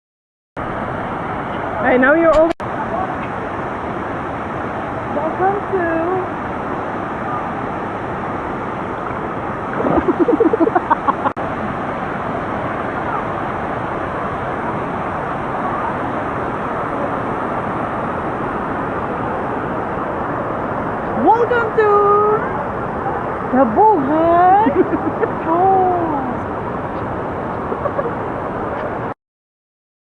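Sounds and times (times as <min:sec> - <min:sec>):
waterfall rushing: 0:06.3 - 0:23.5
person laughing: 0:09.9 - 0:11.3, 0:24.7 - 0:25.5, 0:27.8 - 0:28.3.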